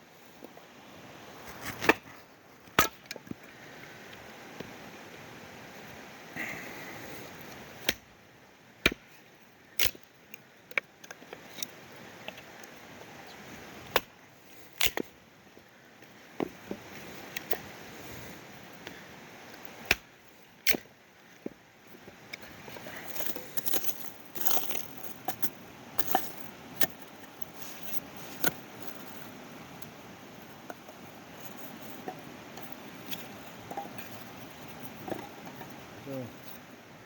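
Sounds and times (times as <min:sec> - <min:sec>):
faint steady hiss: 0:00.0 - 0:37.0
dry wood cracking and snapping: 0:09.8 - 0:11.7, 0:14.8 - 0:15.1, 0:22.4 - 0:28.6.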